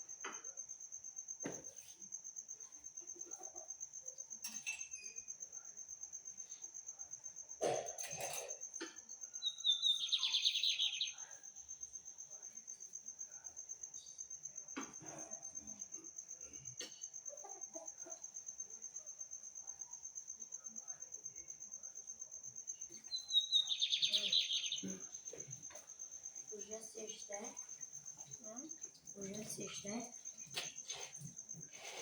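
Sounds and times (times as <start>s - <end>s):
bird singing bright high song: 9.4s - 11.3s, 23.0s - 25.4s.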